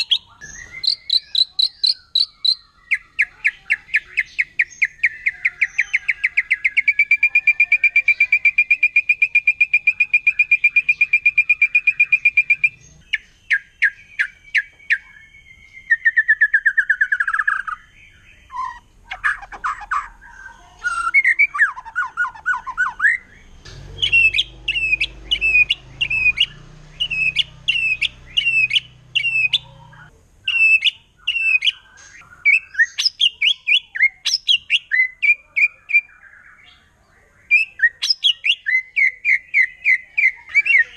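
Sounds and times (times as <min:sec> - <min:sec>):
bird singing trills and whistles: 0:00.0 - 0:40.9.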